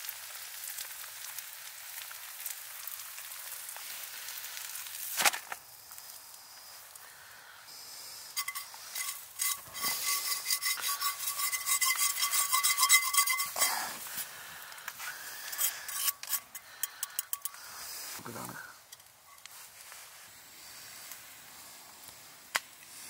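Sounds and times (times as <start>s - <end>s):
food sizzling in a frying pan: 0.0s - 23.0s
utensil scraping in a pan: 8.3s - 20.1s.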